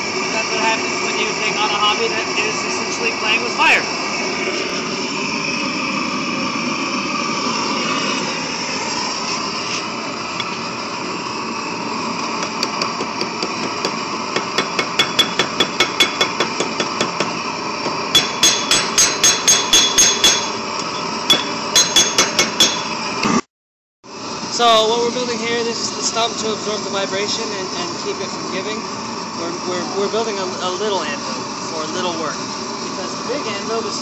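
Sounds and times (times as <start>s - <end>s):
blowtorch hiss: 0.0s - 18.8s, 24.2s - 34.0s
hammer striking steel on anvil: 12.5s - 17.4s, 18.1s - 23.0s.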